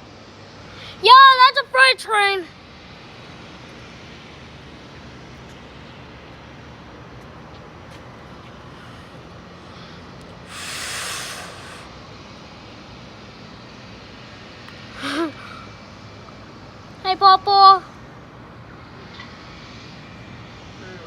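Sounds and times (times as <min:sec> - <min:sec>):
freight train rumbling past: 0:00.0 - 0:21.0
sharp hiss: 0:08.5 - 0:16.2.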